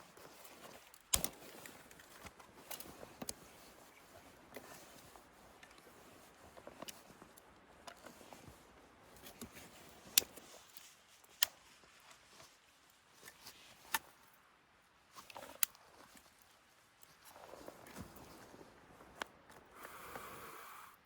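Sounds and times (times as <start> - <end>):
faint hiss: 19.7 - 21.0.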